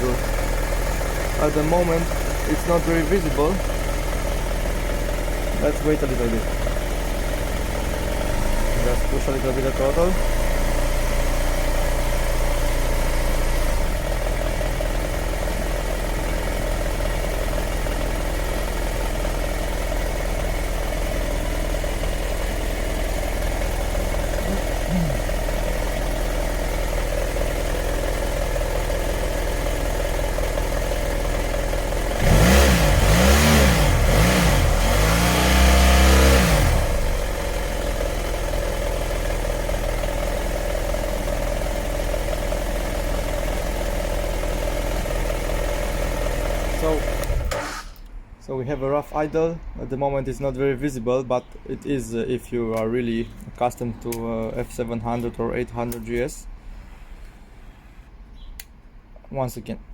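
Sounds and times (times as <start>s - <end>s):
motorcycle engine idling and revving: 0.0s - 48.2s
engine misfires: 12.1s - 48.3s.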